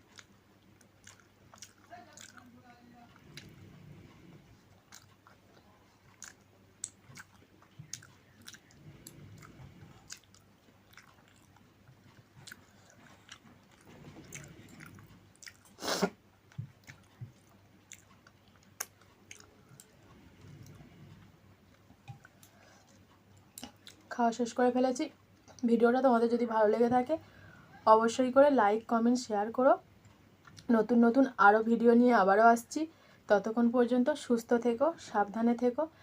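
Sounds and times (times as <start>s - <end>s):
close chewing with mouth clicks: 0.0s - 20.9s, 21.7s - 24.1s.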